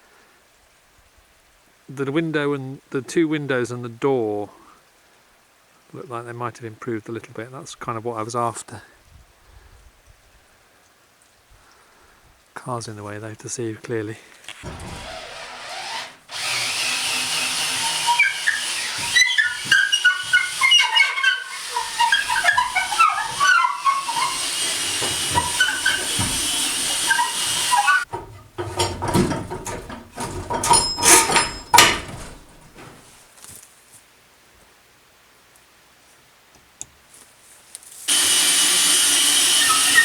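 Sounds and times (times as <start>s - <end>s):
sharp knocking and scraping: 14.5s - 33.1s
high ringing: 22.1s - 32.9s.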